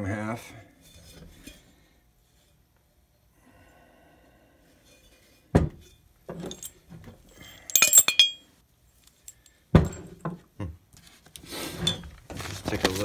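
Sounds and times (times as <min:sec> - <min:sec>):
bright ringing metal clinks: 0:07.6 - 0:08.4.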